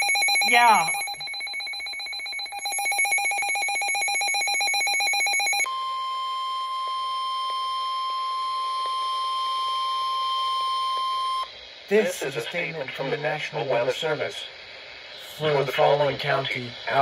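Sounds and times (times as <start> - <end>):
fast-pulsing electronic warble: 0.0 - 6.3
steady alarm tone: 0.0 - 17.0.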